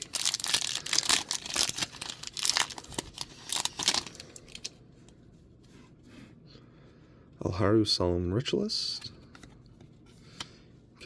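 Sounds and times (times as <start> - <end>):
foil wrapper tearing and crinkling: 0.0 - 4.7.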